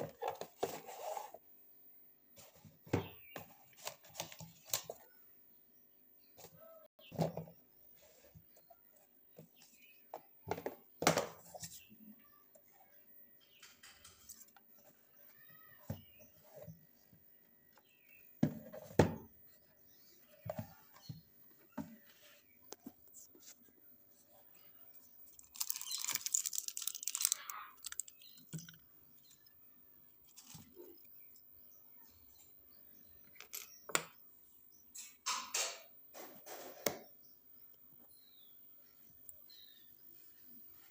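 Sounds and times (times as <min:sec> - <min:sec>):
packaging rustling: 0:25.4 - 0:28.4.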